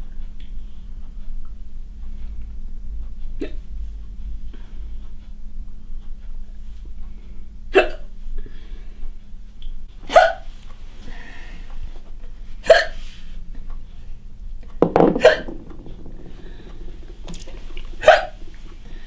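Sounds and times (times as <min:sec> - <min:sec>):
woman hiccupping: 0:07.8 - 0:08.1, 0:18.0 - 0:18.6.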